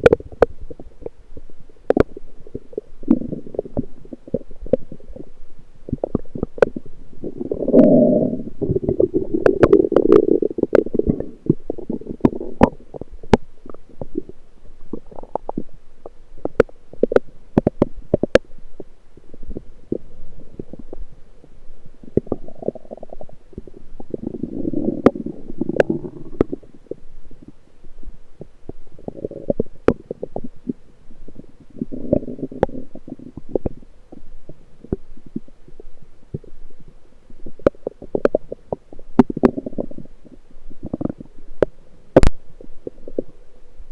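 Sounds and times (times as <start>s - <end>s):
bowel gurgling: 5.9s - 15.7s, 22.1s - 26.8s
sharp clicks and pops: 41.0s - 42.4s.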